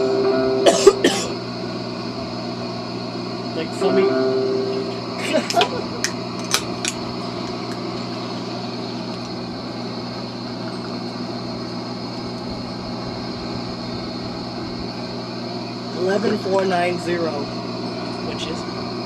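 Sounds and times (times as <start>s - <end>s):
low hum: 0.0s - 19.0s
steady high tone: 0.0s - 19.0s.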